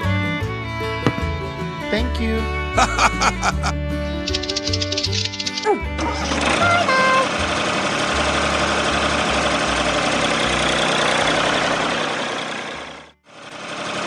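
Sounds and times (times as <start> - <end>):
engine rumbling: 0.0 - 14.0.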